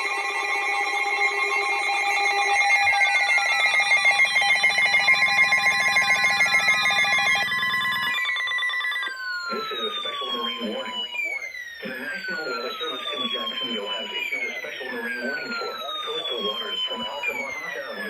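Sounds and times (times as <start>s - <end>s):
falling siren-like sweeps: 0.0s - 18.0s
pulsing electronic alarm tones: 0.0s - 18.0s.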